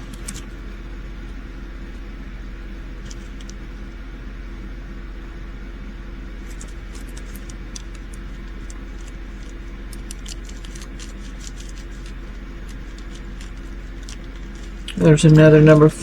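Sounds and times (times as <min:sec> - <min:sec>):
steady low hum: 0:00.0 - 0:16.0
plastic bags crinkling: 0:06.4 - 0:16.0.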